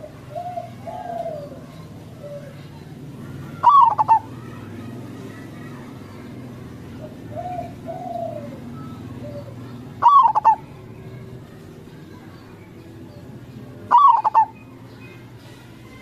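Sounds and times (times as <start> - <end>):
soft low dove coos: 0.0 - 4.6, 6.9 - 11.3, 13.8 - 14.7
dove stuttering coos: 0.0 - 11.6, 13.1 - 14.7.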